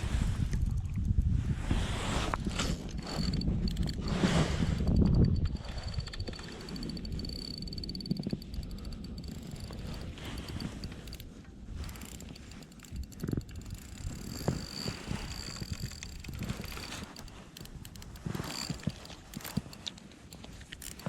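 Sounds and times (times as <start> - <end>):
fishing reel gear whine: 2.9 - 19.8, 20.6 - 21.0
clicks and knocks of tackle: 8.0 - 21.0.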